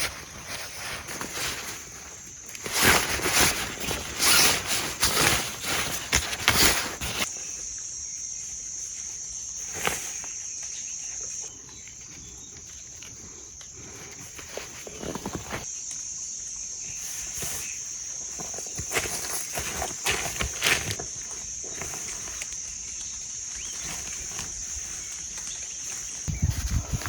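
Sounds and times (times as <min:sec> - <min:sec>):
rustling footsteps: 0:00.0 - 0:07.4, 0:17.4 - 0:27.0
insects chirping chorus: 0:00.0 - 0:27.0.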